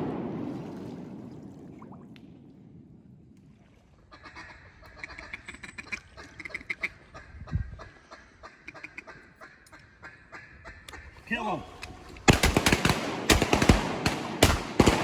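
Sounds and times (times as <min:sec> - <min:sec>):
duck quacking: 0:04.1 - 0:12.0.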